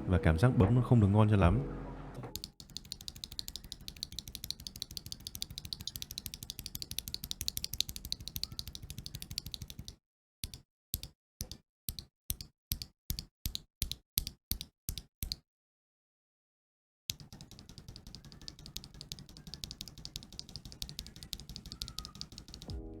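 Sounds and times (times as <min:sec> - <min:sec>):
mechanical keyboard typing: 0:02.3 - 0:10.0, 0:17.1 - 0:22.7.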